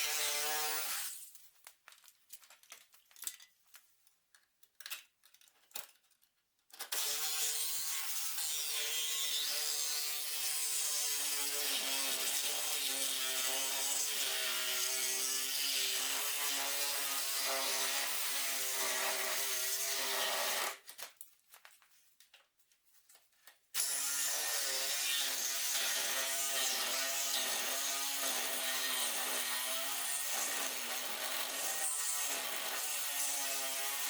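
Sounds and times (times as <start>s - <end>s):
power saw cutting steel: 23.8s - 34.0s.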